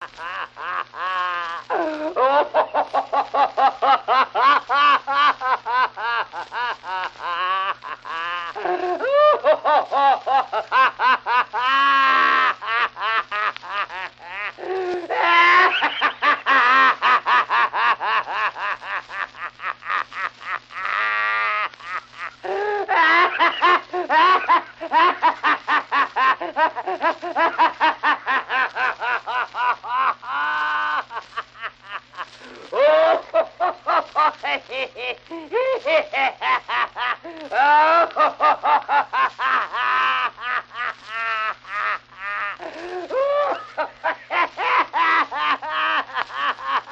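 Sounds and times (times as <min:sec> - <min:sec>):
man laughing hard: 0:00.0 - 0:46.9
wheezing breaths: 0:42.6 - 0:43.5.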